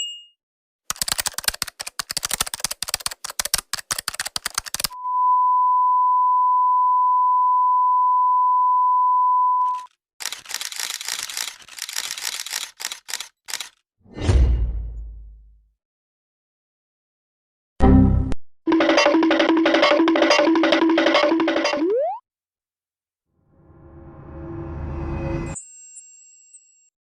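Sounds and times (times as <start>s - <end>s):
rapid clicking: 0.9s - 5.0s, 10.2s - 13.8s
loud single-pitch beep: 5.0s - 9.9s.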